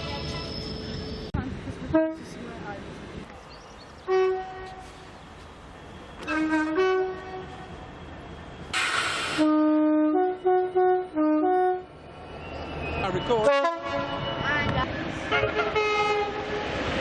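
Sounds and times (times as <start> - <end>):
two-tone train horn blasts: 1.9 - 2.3, 4.1 - 4.9, 6.2 - 7.7, 9.3 - 11.9, 13.4 - 14.3, 15.3 - 16.6
burst of air hiss: 8.8 - 9.5.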